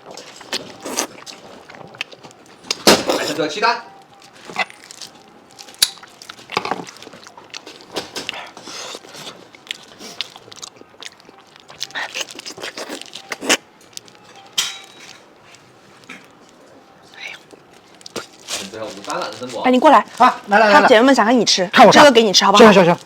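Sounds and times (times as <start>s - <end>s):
crunchy mouth noises: 0.1s - 3.4s, 4.1s - 14.1s, 17.0s - 19.6s
person chewing and biting: 0.2s - 3.4s, 4.1s - 14.2s, 17.1s - 18.7s.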